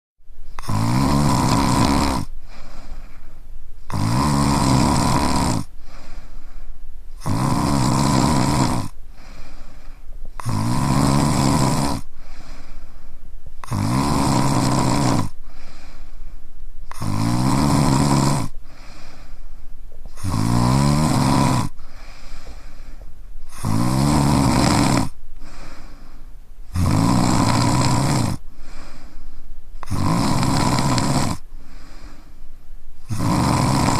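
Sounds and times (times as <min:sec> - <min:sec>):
quiet breathing: 0:00.3 - 0:33.9
man snoring: 0:00.6 - 0:02.9, 0:03.8 - 0:06.2, 0:07.2 - 0:09.4, 0:10.4 - 0:12.6, 0:13.6 - 0:15.9, 0:16.9 - 0:19.2, 0:20.1 - 0:22.7, 0:23.5 - 0:25.9, 0:26.7 - 0:29.2, 0:29.8 - 0:32.2, 0:33.0 - 0:33.9.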